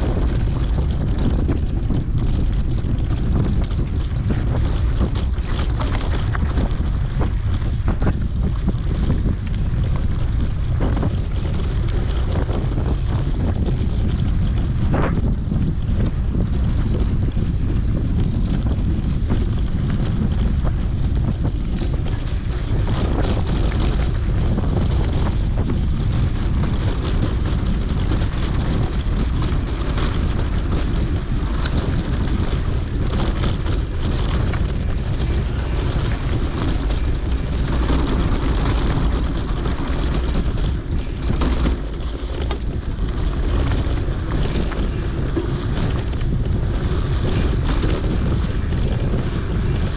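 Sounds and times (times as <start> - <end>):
bike clicks and rattles: 0.0 - 49.9
wind rushing over microphone: 0.0 - 49.9.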